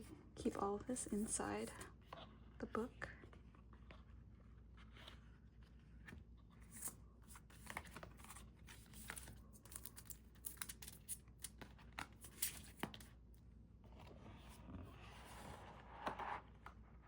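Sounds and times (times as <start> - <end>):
paper and plastic crinkling: 6.7 - 13.1.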